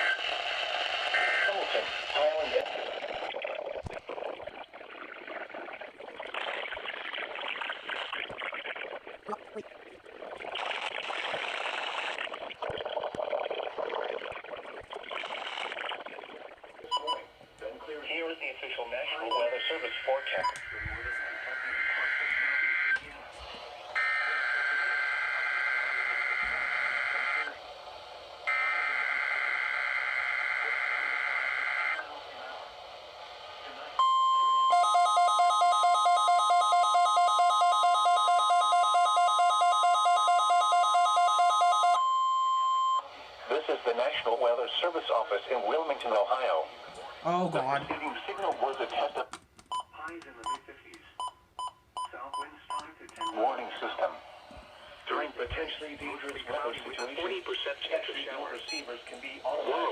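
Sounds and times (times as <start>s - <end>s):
radio static hiss: 0.0s - 34.0s, 43.0s - 49.4s, 50.0s - 51.2s, 52.1s - 59.9s
rapid two-tone beeping alarm: 34.0s - 43.1s
steady warning alarm tone: 34.0s - 43.1s.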